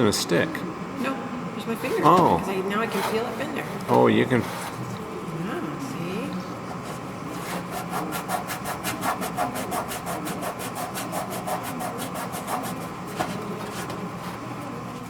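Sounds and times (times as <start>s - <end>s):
sandpaper rubbing on aluminium: 7.3s - 13.8s.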